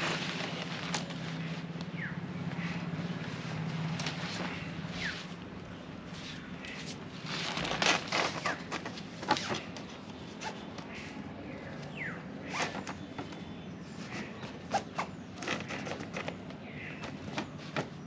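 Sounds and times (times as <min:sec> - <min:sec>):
tent fabric rustling: 0:00.0 - 0:10.7.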